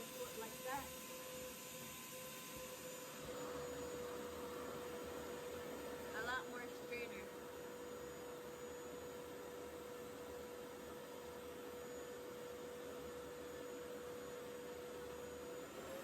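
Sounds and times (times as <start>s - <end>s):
hair dryer motor humming: 0.0s - 16.0s.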